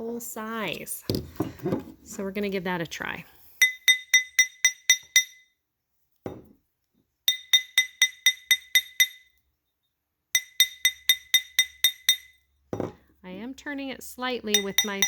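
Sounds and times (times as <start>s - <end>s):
hammer tapping metal ring: 3.6s - 5.5s, 7.3s - 9.4s, 10.4s - 12.9s, 14.5s - 15.0s.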